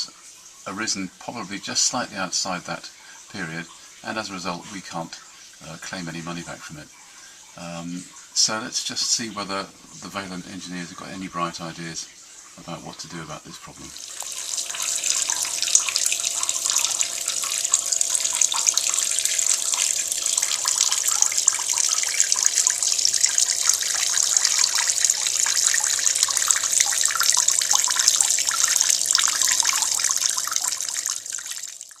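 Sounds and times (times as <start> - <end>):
water splashing into a bucket: 13.8 - 32.0.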